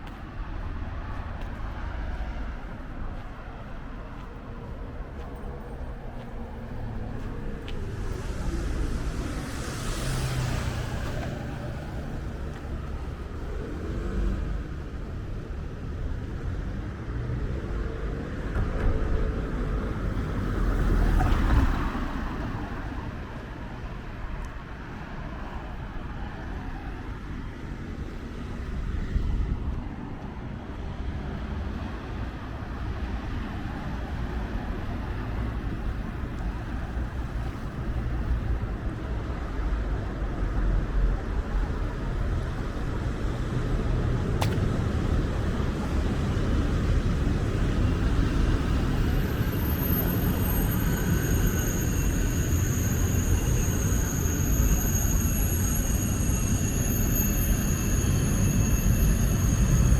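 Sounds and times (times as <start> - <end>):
street traffic: 0.0 - 59.9
high steady squeal: 46.2 - 59.9.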